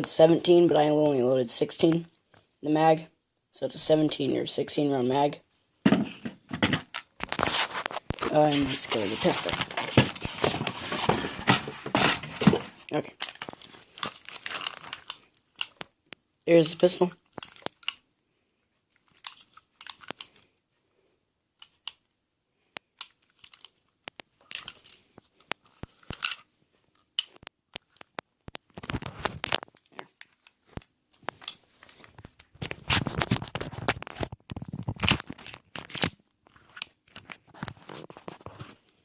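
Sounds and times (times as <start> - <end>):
rustling: 5.8 - 15.9
pistol handling clicks and knocks: 19.2 - 20.4.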